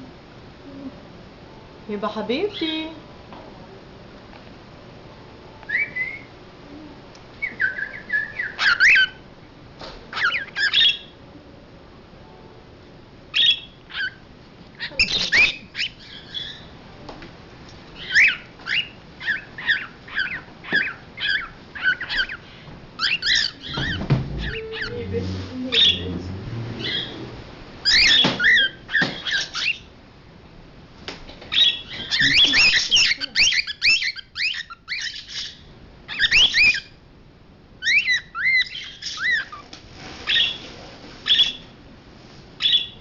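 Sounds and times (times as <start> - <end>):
cockatiel whistled chirps: 5.7 - 6.3, 7.4 - 9.2, 31.5 - 36.9.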